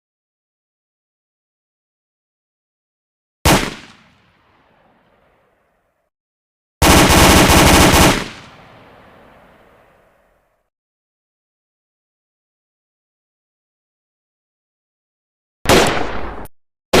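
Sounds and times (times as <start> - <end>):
rapid automatic gunfire: 3.5 - 3.9, 6.8 - 8.7
single loud gunshot: 3.5 - 4.2, 15.7 - 17.0.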